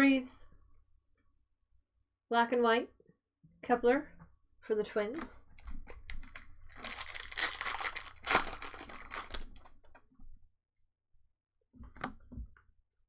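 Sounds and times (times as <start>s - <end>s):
soft handling sounds: 5.5s - 9.7s
wrapper crinkling: 5.6s - 9.7s
foil pack tearing: 6.1s - 9.7s.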